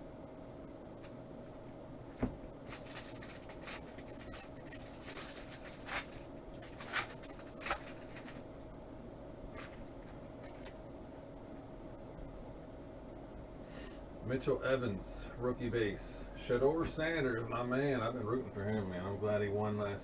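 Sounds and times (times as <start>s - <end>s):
faint steady hum: 0.0s - 20.0s
trading cards swishing and clicking: 2.1s - 8.5s.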